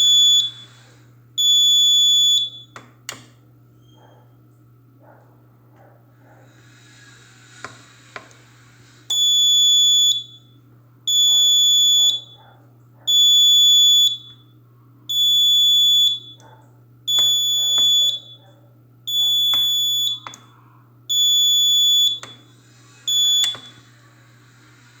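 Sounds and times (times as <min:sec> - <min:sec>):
fire alarm beeping: 0:00.0 - 0:00.8, 0:01.4 - 0:02.8, 0:09.1 - 0:12.4, 0:13.1 - 0:16.4, 0:17.1 - 0:18.5, 0:19.1 - 0:20.5, 0:21.1 - 0:22.5, 0:23.1 - 0:23.9.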